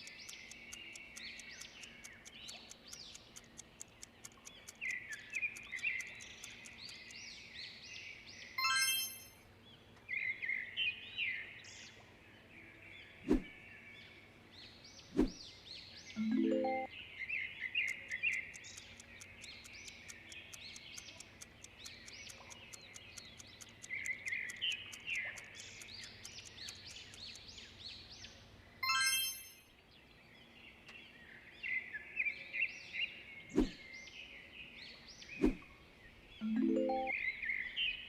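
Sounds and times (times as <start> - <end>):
fast even ticking: 0.0 - 7.3, 17.8 - 27.7
sharp clicks: 0.0 - 7.4, 17.8 - 28.0
small birds chirping: 0.0 - 38.0
short bright chime: 8.6 - 9.4.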